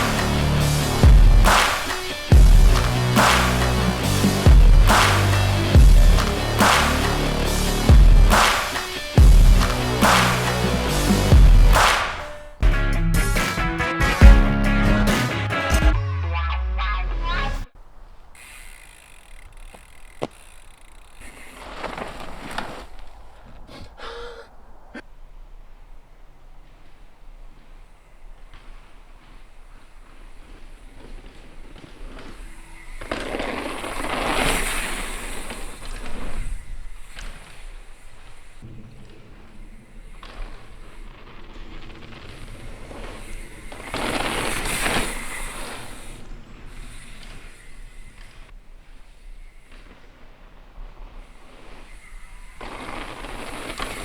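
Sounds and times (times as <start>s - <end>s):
mountain bike rolling and rattling: 0.0s - 12.6s, 17.7s - 54.0s
tyre and wind rush: 0.0s - 12.7s, 17.2s - 54.0s
freewheel ratchet clicking: 18.3s - 21.7s.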